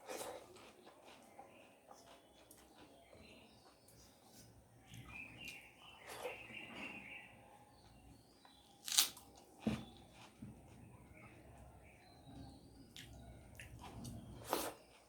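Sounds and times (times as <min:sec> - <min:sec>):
person chewing food: 0:00.0 - 0:04.2, 0:08.8 - 0:10.8, 0:12.9 - 0:15.0
sharp crunches: 0:08.8 - 0:09.2.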